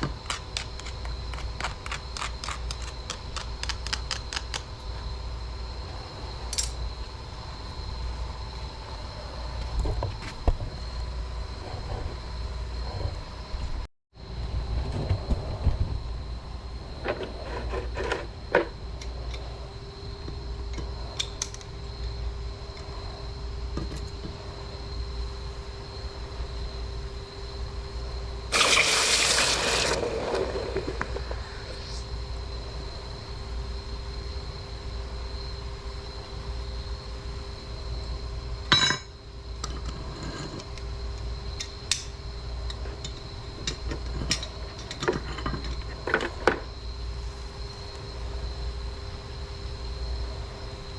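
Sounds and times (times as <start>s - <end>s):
loud rushing hiss: 28.5s - 32.2s
furnace rumbling: 28.5s - 32.8s.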